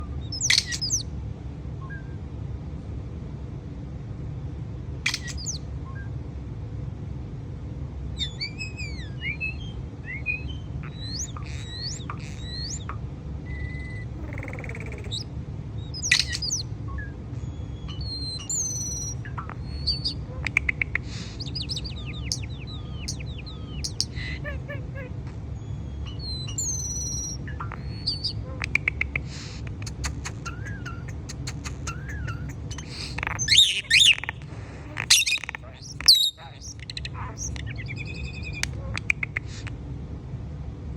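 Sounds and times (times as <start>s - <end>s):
steady low hum: 0.0s - 40.9s
bird chirping and squawking: 0.3s - 1.1s, 5.1s - 5.6s, 8.2s - 16.7s, 17.4s - 39.7s.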